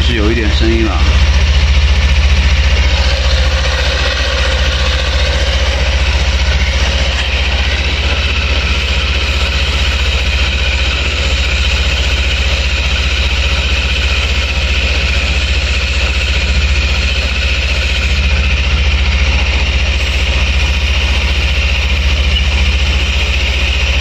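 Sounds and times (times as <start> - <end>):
dry drive chain noise: 0.0 - 24.0
motorcycle engine running: 0.0 - 24.0.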